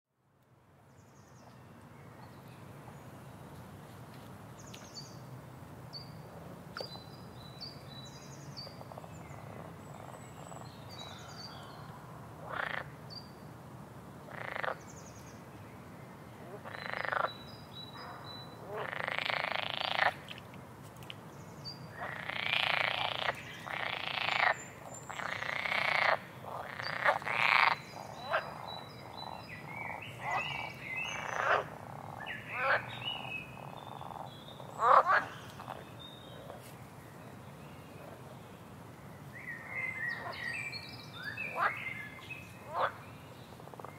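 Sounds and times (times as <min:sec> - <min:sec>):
frogs croaking: 0:08.6 - 0:11.8, 0:12.4 - 0:13.2, 0:14.3 - 0:14.9, 0:16.4 - 0:20.5, 0:21.9 - 0:36.6, 0:39.6 - 0:43.9.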